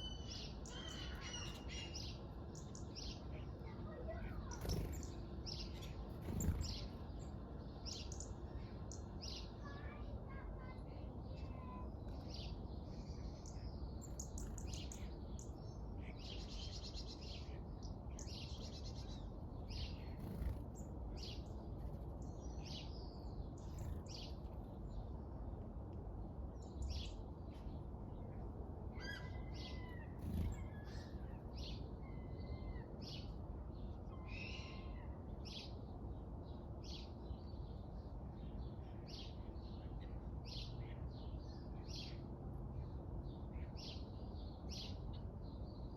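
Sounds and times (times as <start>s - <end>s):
birds chirping: 0.0s - 25.2s, 26.6s - 35.8s
low background rumble: 0.0s - 45.9s.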